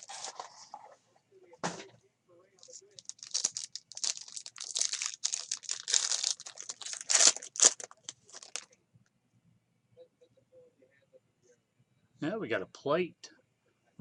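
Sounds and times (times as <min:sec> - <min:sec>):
plastic wrapper tearing and crinkling: 0:00.0 - 0:00.5, 0:02.6 - 0:08.7.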